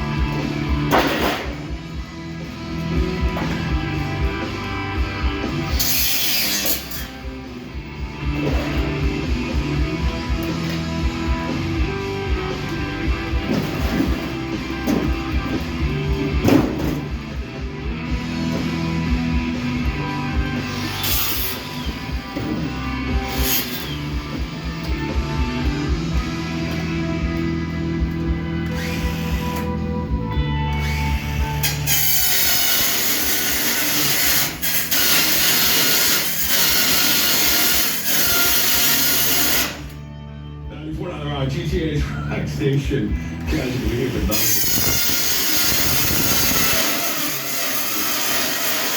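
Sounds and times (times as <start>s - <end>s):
rock music on radio: 0.0s - 48.9s
power tool cutting sheet metal: 5.5s - 7.4s, 20.5s - 24.4s, 28.7s - 29.7s, 30.8s - 40.0s, 43.5s - 48.9s.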